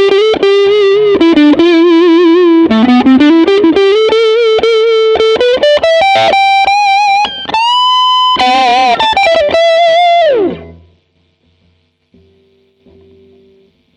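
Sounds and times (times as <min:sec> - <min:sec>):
electric guitar lead with bends: 0:00.0 - 0:10.9.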